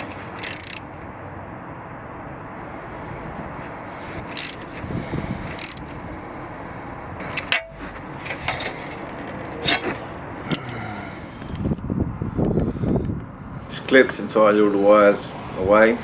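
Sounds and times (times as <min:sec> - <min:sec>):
sharp clicks and knocks: 0:05.5 - 0:05.9.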